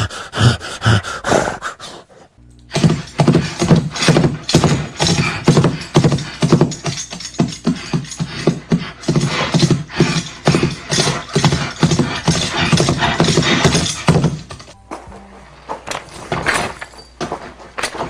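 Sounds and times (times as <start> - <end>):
horse hoofbeats clip-clop: 2.7 - 14.8.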